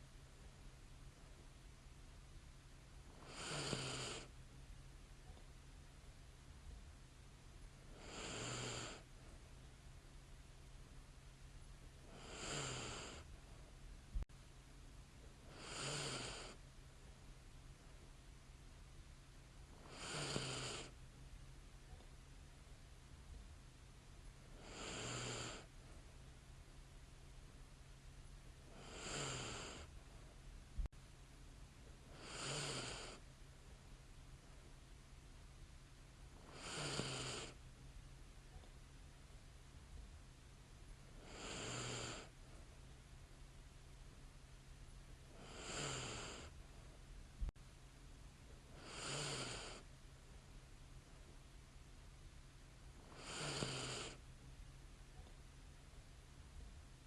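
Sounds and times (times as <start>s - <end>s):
woman breathing with light snores: 3.1s - 4.4s, 7.8s - 9.5s, 12.0s - 13.7s, 15.4s - 16.6s, 19.8s - 21.0s, 24.5s - 26.1s, 28.6s - 30.3s, 32.0s - 33.2s, 36.4s - 37.6s, 41.1s - 42.8s, 45.3s - 47.0s, 48.6s - 49.9s, 53.0s - 54.2s.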